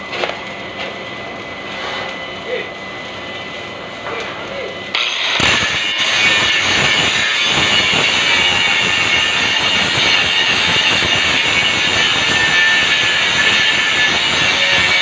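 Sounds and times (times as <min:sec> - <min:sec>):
angle grinder grinding metal: 0:04.9 - 0:15.0.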